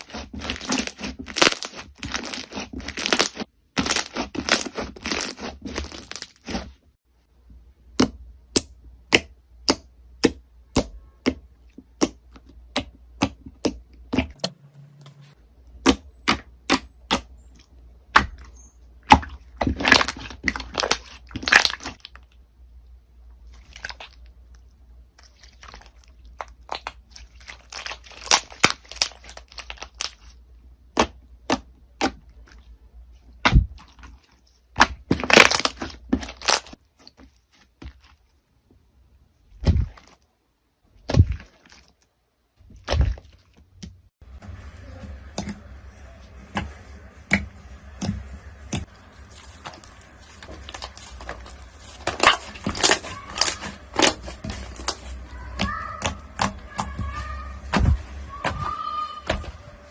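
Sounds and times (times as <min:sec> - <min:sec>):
slime crackling and popping: 0:00.0 - 0:06.7, 0:19.1 - 0:22.3, 0:25.3 - 0:32.5, 0:34.8 - 0:36.8, 0:48.0 - 0:57.2.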